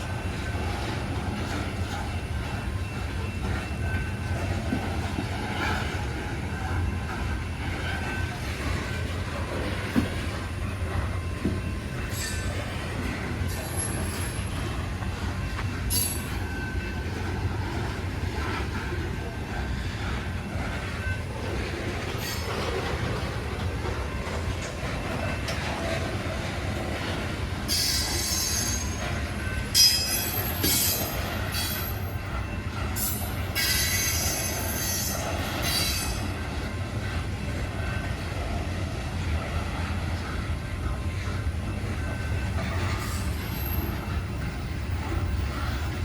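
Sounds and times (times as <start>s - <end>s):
freight train rumbling past: 0.0s - 46.0s
train wheels squealing: 0.0s - 46.0s.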